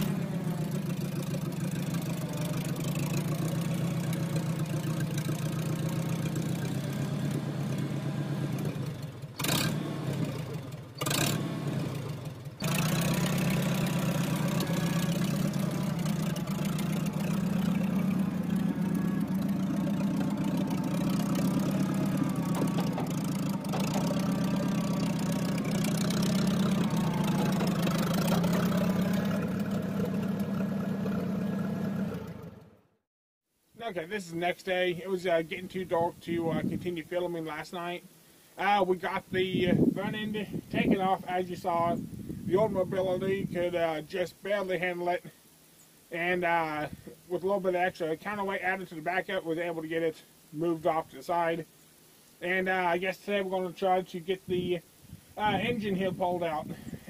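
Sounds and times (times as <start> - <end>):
engine running steadily: 0.0 - 32.8.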